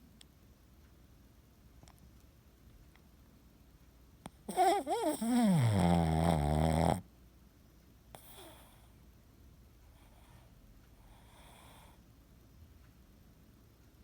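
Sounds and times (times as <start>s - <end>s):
dog snoring softly: 4.2s - 7.1s, 8.1s - 9.0s, 9.9s - 12.0s.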